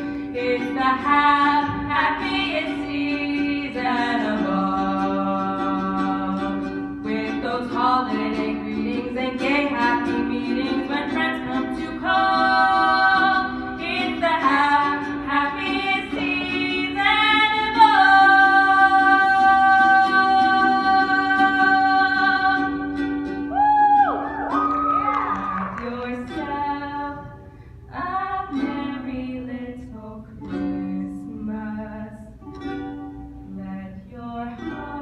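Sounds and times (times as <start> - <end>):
voices singing in harmony: 0.4 - 22.9.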